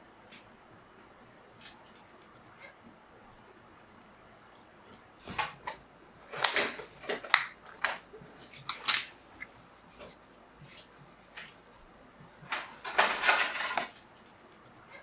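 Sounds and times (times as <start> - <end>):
kitchen items clicking and knocking: 5.4 - 9.2, 12.4 - 14.0.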